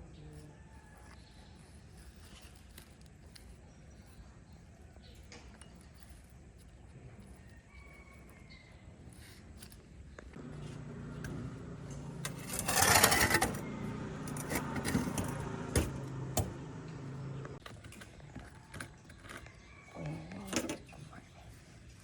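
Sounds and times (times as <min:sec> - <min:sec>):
machine hum: 0:10.3 - 0:17.6.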